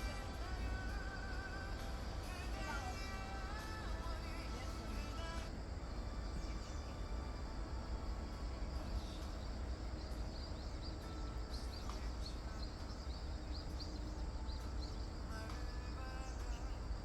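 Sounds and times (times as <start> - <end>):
small bird chirping: 0.0 - 7.4, 8.7 - 17.0
steady low rumble: 0.0 - 17.0.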